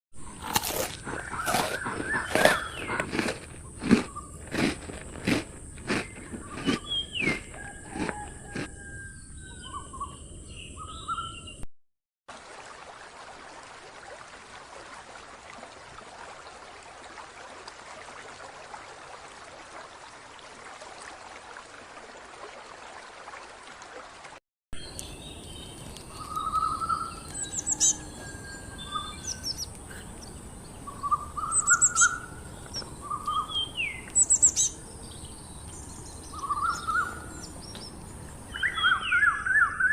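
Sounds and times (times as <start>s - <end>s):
birds chirping and whistling: 1.1s - 3.0s, 6.1s - 11.6s, 24.8s - 39.9s.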